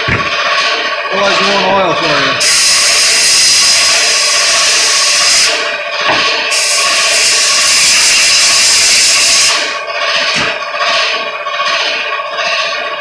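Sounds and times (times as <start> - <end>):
air compressor running: 0.0 - 13.0
air blow gun hissing: 2.4 - 5.6, 6.5 - 9.7.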